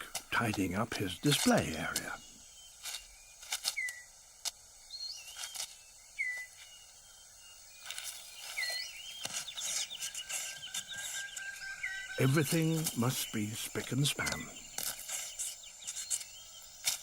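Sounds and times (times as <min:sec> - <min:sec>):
rustles and snaps of leaf litter: 0:00.0 - 0:06.8, 0:07.8 - 0:17.0
high insect-like trill: 0:00.8 - 0:17.0
bird whistled call: 0:02.6 - 0:04.1, 0:04.9 - 0:16.6.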